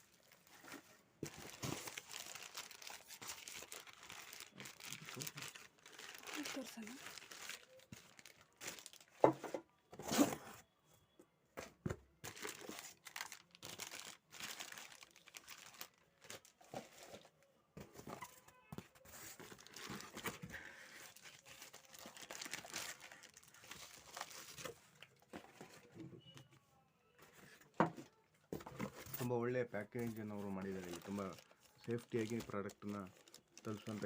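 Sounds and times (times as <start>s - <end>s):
packaging crinkling and tearing: 0.0s - 9.3s, 12.2s - 17.3s, 19.3s - 25.3s, 29.0s - 34.0s.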